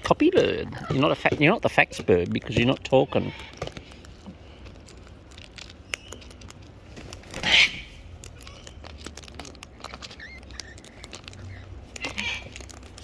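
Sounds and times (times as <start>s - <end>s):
small clicks and taps: 0.0s - 7.3s
cockatoo screech: 3.0s - 3.6s, 7.4s - 7.9s.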